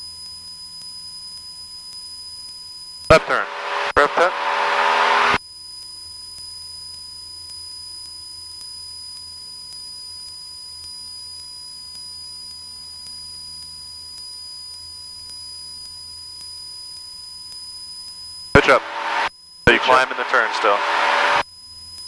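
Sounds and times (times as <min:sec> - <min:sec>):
high electrical whine: 0:03.1 - 0:05.4, 0:18.6 - 0:21.4
muffled aircraft engine hum: 0:18.7 - 0:21.4.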